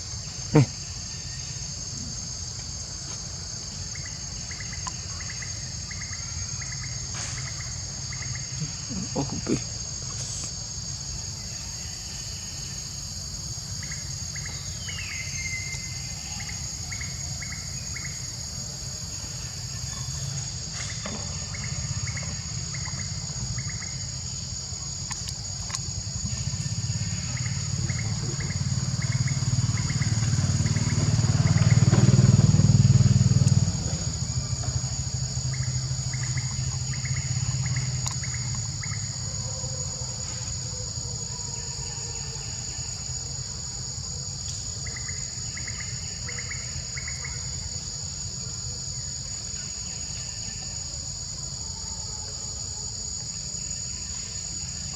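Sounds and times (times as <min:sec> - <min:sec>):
insects shrilling: 0:03.9 - 0:18.4
low motor rumble: 0:25.8 - 0:40.2.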